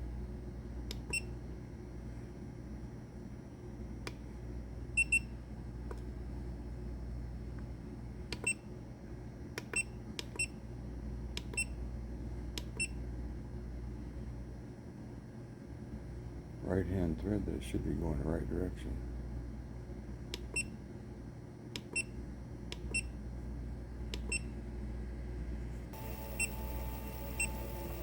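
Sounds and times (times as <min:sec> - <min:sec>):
steady low hum: 0:00.0 - 0:28.0
keypad electronic beeps: 0:26.0 - 0:28.0.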